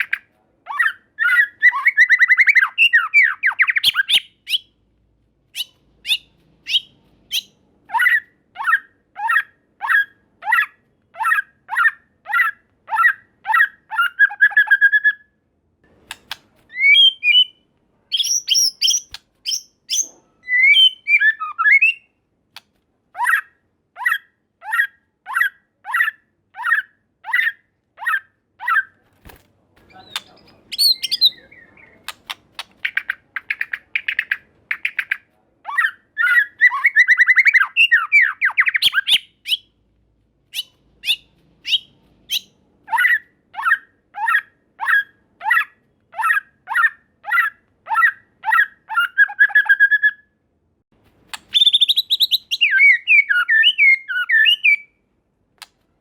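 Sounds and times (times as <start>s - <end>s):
bird singing whistled notes: 16.7s - 22.1s, 29.9s - 32.1s, 51.5s - 55.0s.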